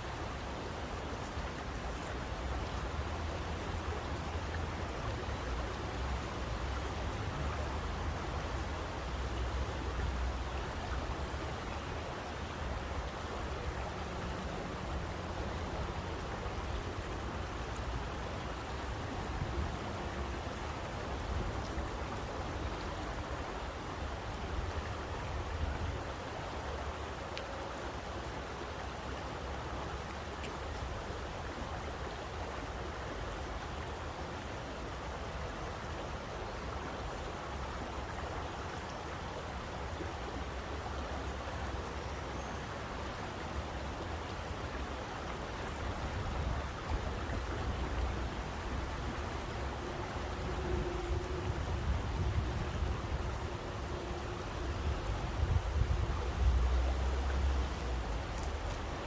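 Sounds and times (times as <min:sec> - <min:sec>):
water rushing: 0:00.0 - 0:59.0
faint ticks: 0:58.1 - 0:58.9.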